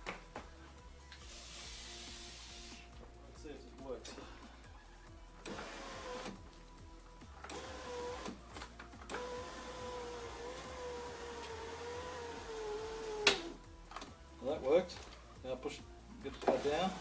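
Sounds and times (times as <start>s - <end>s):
power window motor whine: 5.5s - 6.4s, 7.5s - 8.4s, 9.1s - 13.6s.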